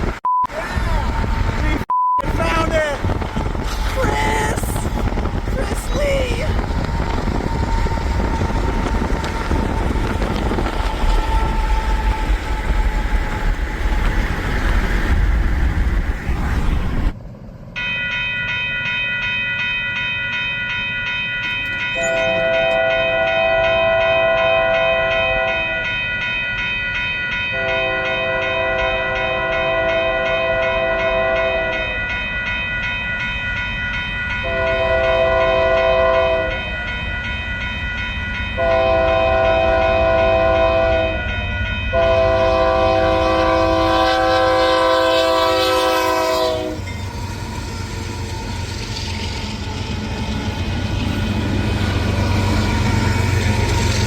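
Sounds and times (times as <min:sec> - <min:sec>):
train air horn blasts: 0:22.0 - 0:25.9, 0:27.5 - 0:31.9, 0:34.4 - 0:36.7, 0:38.6 - 0:41.3, 0:41.9 - 0:46.9.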